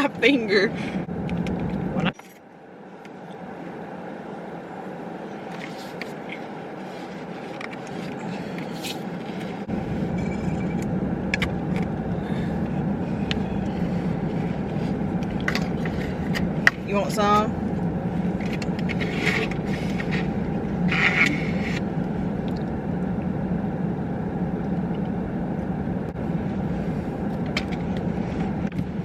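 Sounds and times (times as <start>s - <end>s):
car road and engine noise: 0.0s - 29.0s
deep rumble: 0.7s - 2.2s, 8.0s - 29.0s.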